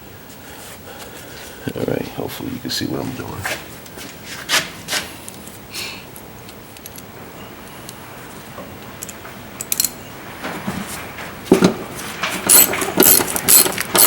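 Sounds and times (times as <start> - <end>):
metal hardware clicking: 9.0 - 10.0.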